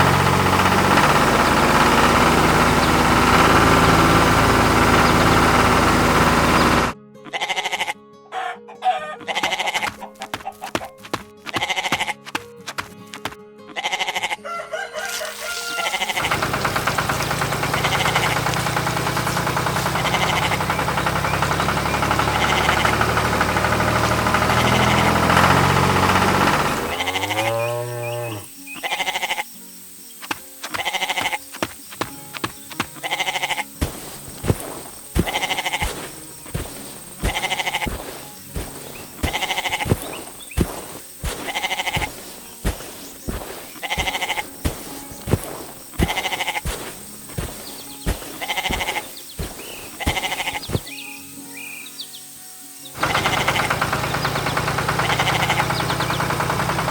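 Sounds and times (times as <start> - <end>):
tractor engine running: 0.0 - 7.0, 15.2 - 29.2, 29.8 - 51.3, 53.0 - 56.9
sheep bleating: 7.2 - 10.6, 11.5 - 12.4, 13.6 - 21.4, 22.1 - 23.4, 24.2 - 29.6, 30.7 - 31.6, 32.9 - 51.0, 53.0 - 53.8, 55.0 - 55.8.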